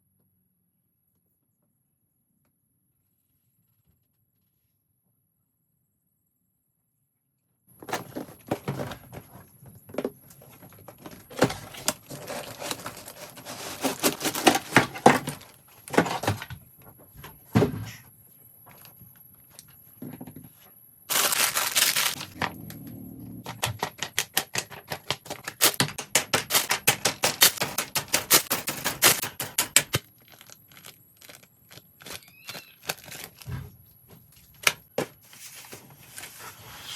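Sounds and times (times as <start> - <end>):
packaging tearing: 11.0 - 15.6, 21.1 - 22.4, 24.2 - 33.5
packaging clicks and taps: 23.5 - 33.6.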